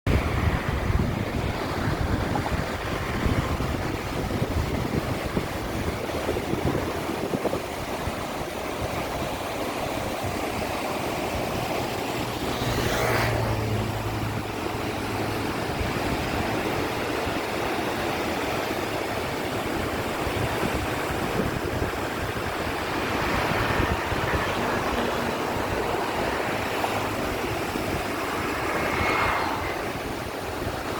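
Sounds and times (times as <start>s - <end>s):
river water rushing: 0.1s - 30.9s
wind rumble on microphone: 0.1s - 30.9s
whoosh: 22.5s - 30.9s.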